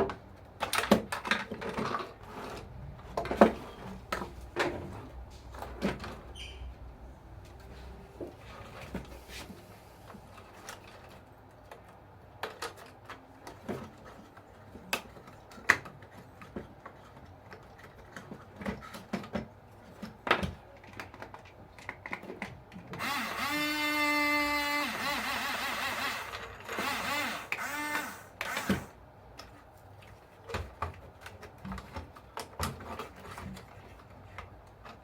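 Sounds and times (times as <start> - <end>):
small electric motor whining: 23.0 - 28.9.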